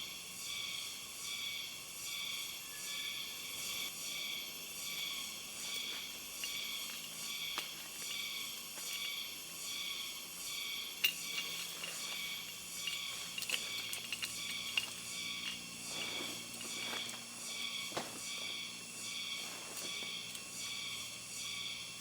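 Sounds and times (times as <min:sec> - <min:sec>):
night insects chirping: 0:00.0 - 0:22.0.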